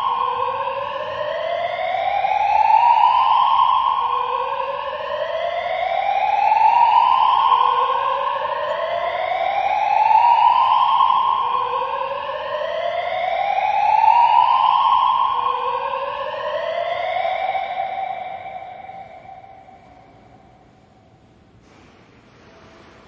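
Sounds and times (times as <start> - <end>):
fire alarm siren whooping: 0.0 - 20.9.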